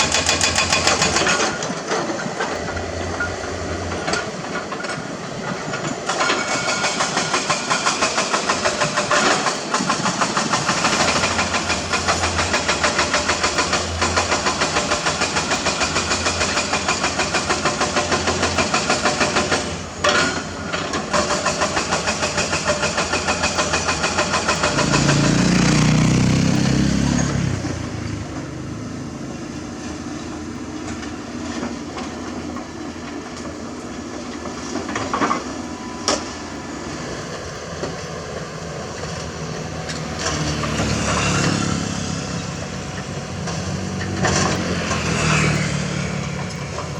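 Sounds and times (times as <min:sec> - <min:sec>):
rhythmic clatter: 0:00.0 - 0:27.8
sharp clacks: 0:00.0 - 0:27.8
excavator diesel engine: 0:00.0 - 0:46.9.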